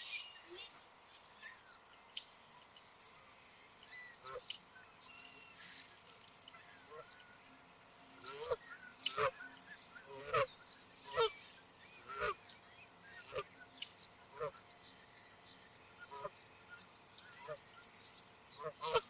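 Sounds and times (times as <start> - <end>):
faint high chirping calls: 3.7 - 19.0
geese honking: 8.2 - 11.4, 12.0 - 12.4, 13.1 - 13.7, 14.3 - 14.6, 16.0 - 16.4, 17.2 - 17.7, 18.5 - 19.0.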